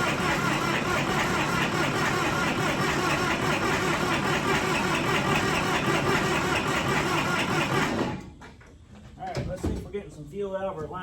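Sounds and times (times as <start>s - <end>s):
tractor diesel engine running: 0.0s - 8.4s.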